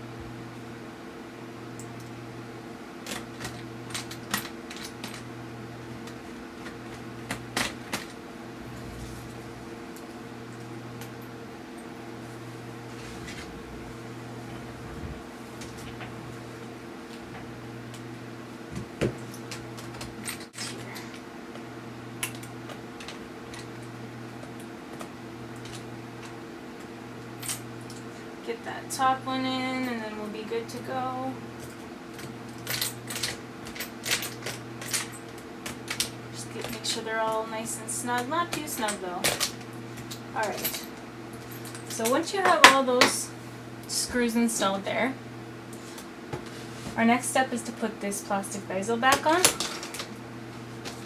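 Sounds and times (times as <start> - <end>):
steady electrical hum: 0.0 - 51.0
low hum: 8.5 - 18.5.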